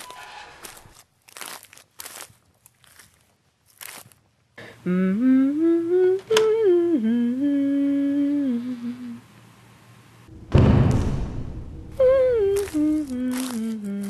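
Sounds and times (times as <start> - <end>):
person humming: 4.6 - 9.3, 11.9 - 14.0.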